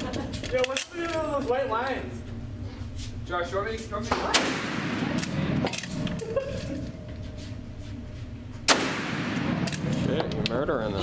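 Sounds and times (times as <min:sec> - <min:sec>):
rifle shots with echo: 0:04.3 - 0:05.2, 0:08.7 - 0:09.8.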